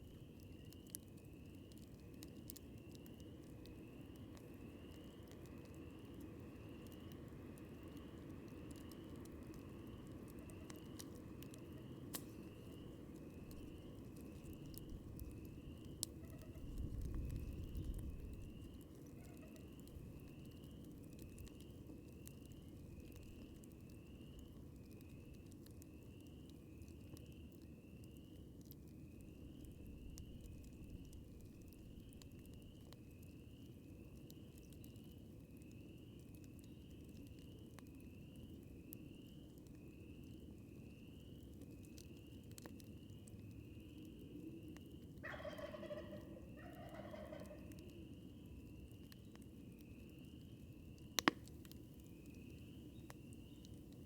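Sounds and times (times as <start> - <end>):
campfire hissing and crackling: 0.0 - 45.2, 47.5 - 54.0
fire popping: 0.0 - 45.2, 47.5 - 54.0
wild turkey gobbling: 16.2 - 16.8, 19.2 - 19.6, 45.2 - 47.8.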